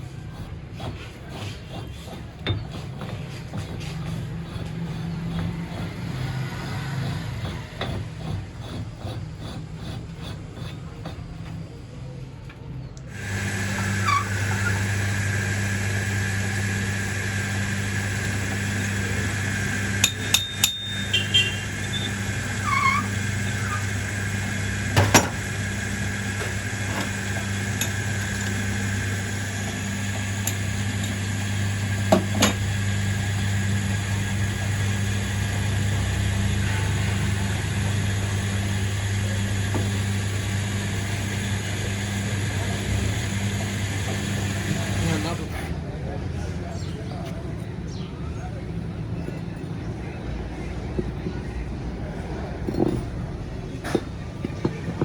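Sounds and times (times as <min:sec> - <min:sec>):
machine motor humming and whining: 0:02.0 - 0:10.8, 0:13.1 - 0:47.8.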